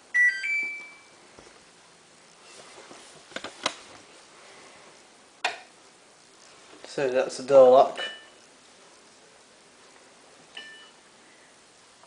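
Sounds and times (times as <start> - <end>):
washing machine electronic beep: 0.1 - 1.2, 8.0 - 8.4, 10.6 - 11.0.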